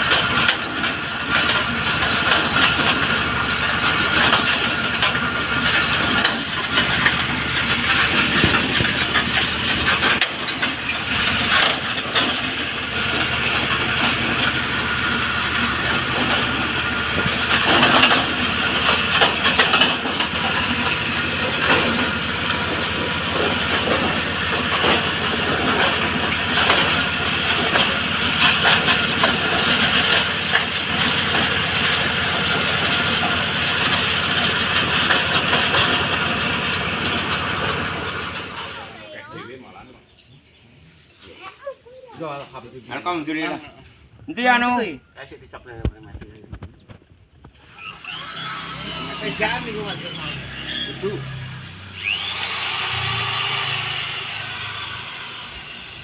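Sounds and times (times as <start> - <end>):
metallic clatter and knocks: 0.0 - 38.7
drilling machine engine running: 0.0 - 39.9, 47.4 - 56.0.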